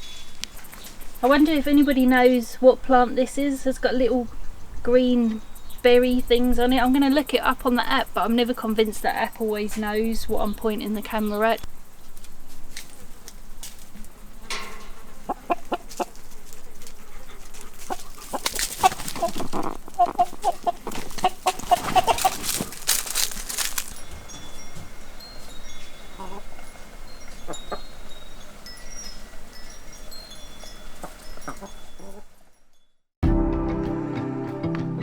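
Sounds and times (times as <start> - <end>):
chickens clucking: 5.2 - 28.6
rustling: 9.7 - 26.9
thin high ringing tones: 22.2 - 33.0.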